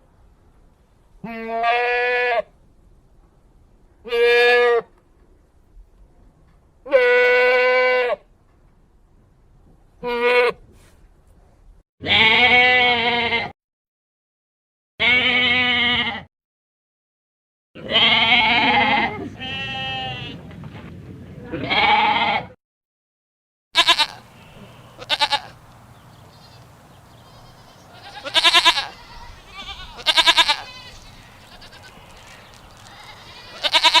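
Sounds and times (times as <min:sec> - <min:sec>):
goats bleating: 0:12.0 - 0:13.5, 0:15.0 - 0:16.3, 0:17.8 - 0:20.4, 0:21.6 - 0:22.5, 0:23.8 - 0:25.7, 0:26.3 - 0:34.0.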